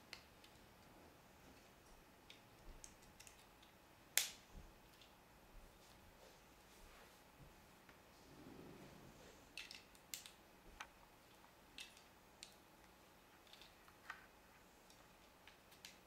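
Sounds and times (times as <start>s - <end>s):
plastic pieces clicking together: 2.3s - 5.1s, 9.5s - 12.6s, 13.3s - 14.2s, 14.9s - 16.0s.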